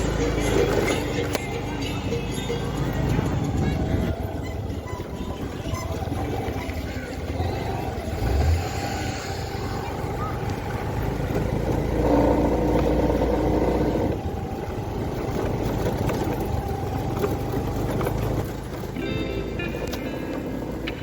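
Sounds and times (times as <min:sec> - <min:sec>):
music: 0:00.0 - 0:08.0, 0:18.7 - 0:21.0
motorcycle engine running: 0:00.0 - 0:21.0
wind noise: 0:02.7 - 0:11.2.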